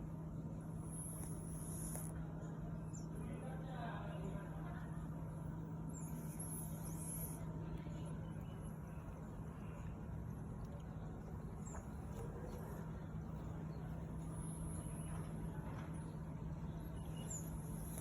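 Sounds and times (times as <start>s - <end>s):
cat snoring: 0.8s - 2.2s, 17.6s - 18.0s.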